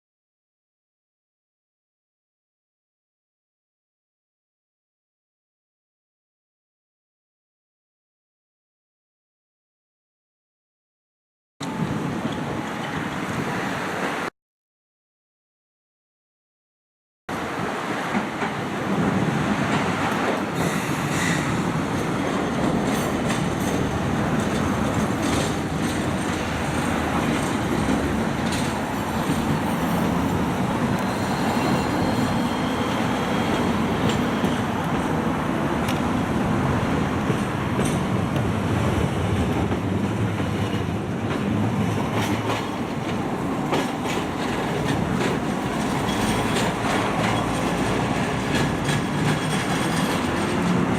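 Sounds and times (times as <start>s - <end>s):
train wheels rumbling on track: 17.3s - 50.9s
wheel squeals: 25.4s - 35.2s.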